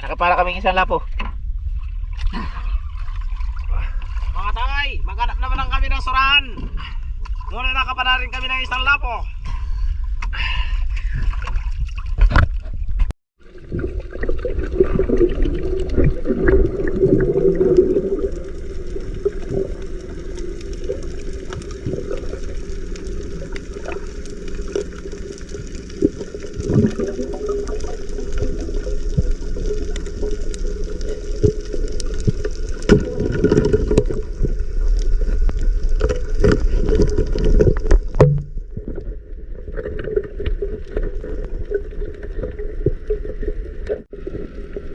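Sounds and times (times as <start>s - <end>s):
water noise: 0.0s - 44.9s
steady low rumble: 14.5s - 39.7s.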